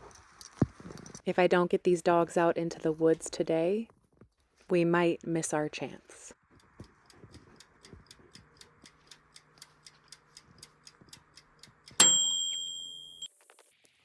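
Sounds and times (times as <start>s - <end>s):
kitchen timer ticking: 6.6s - 13.2s
timer bell ringing: 12.0s - 13.3s.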